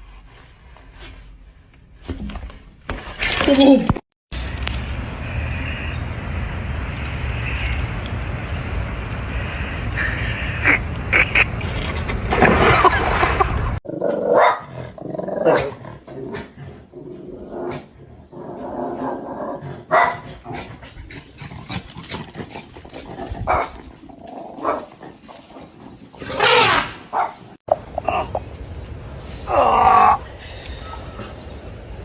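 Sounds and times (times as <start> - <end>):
dog barking and yelping: 14.3 - 14.7, 19.8 - 20.8, 22.2 - 24.0, 26.3 - 27.5.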